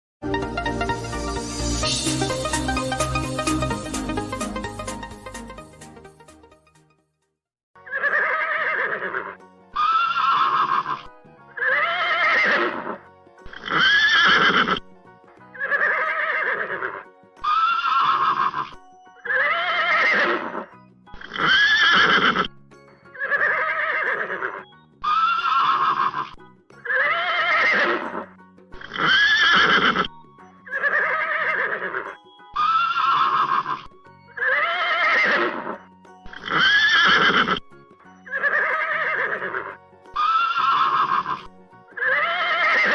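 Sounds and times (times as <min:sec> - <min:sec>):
horse whinnying: 0:07.8 - 0:14.8, 0:15.6 - 0:22.5, 0:23.2 - 0:30.1, 0:30.7 - 0:37.6, 0:38.3 - 0:42.9.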